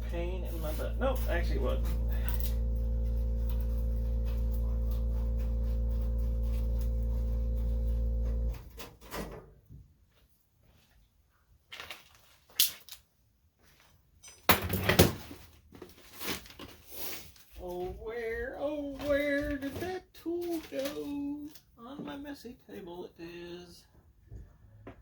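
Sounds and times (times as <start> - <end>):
electrical hum: 0.0 - 8.8
clicks of tools and metal parts: 14.2 - 15.2.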